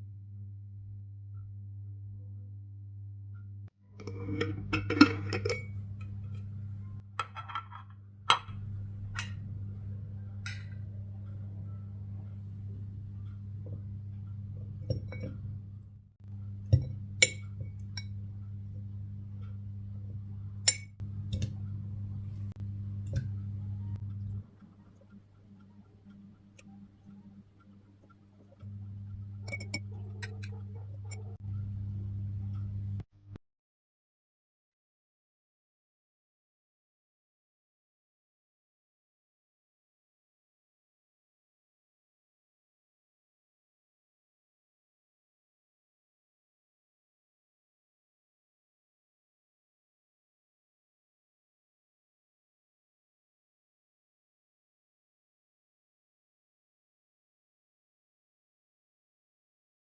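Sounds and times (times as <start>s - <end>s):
steady low hum: 0.1s - 33.1s
glass and kitchenware clinking: 4.2s - 9.5s, 10.5s - 10.8s, 16.8s - 18.1s, 29.4s - 31.4s
light clicks and taps: 16.2s - 33.0s.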